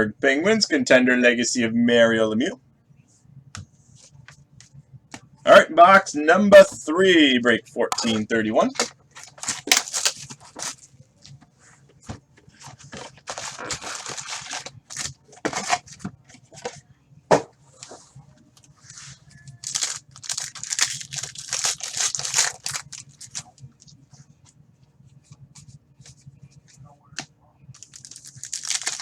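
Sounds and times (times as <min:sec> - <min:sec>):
plastic wrapping tearing and crinkling: 0:09.3 - 0:10.8, 0:13.2 - 0:15.8, 0:19.5 - 0:23.6, 0:27.7 - 0:29.0
sharp clicks and handling noises: 0:09.3 - 0:10.8.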